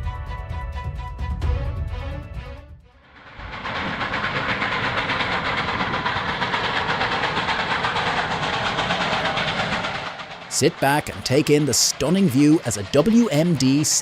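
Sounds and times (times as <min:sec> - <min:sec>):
train wheels on rails: 0:03.0 - 0:14.0.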